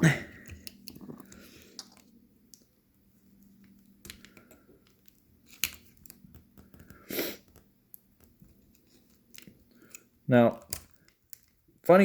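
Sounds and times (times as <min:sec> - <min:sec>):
clicks and scratches on electronics: 0:03.5 - 0:11.6.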